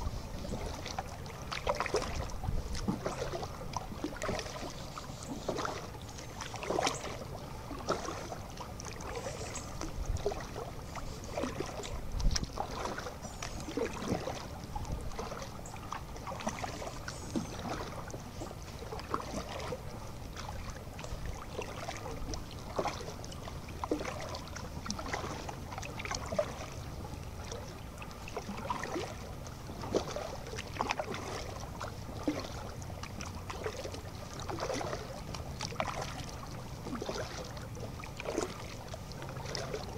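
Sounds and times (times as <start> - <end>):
paddle splashing in water: 0.0 - 39.9.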